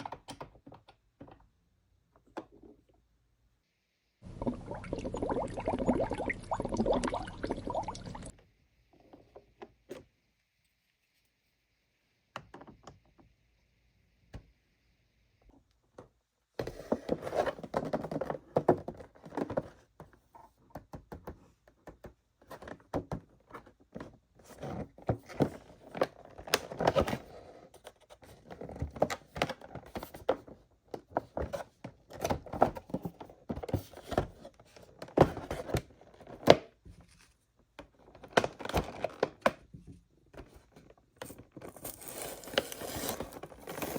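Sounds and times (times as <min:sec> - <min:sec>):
packaging crinkling and rustling: 0:40.8 - 0:43.9.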